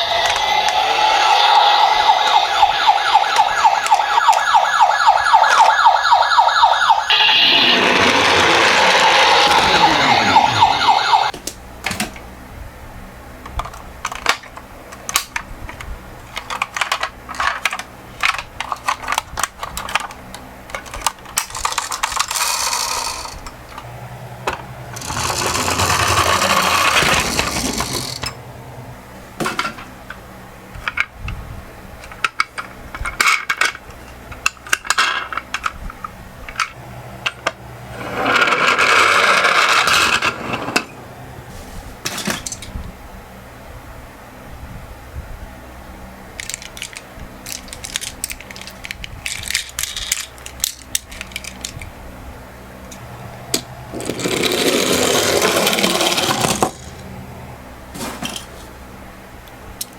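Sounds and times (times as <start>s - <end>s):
toy cars rolling down slope: 0.0s - 6.4s, 7.1s - 11.3s, 16.2s - 23.8s, 24.4s - 28.4s, 36.5s - 40.9s, 46.3s - 51.8s, 52.9s - 57.1s
toy ambulance electronic siren: 0.0s - 11.3s
plastic toy cars clicking: 13.4s - 23.6s, 24.5s - 28.4s, 46.3s - 51.9s, 52.9s - 57.0s.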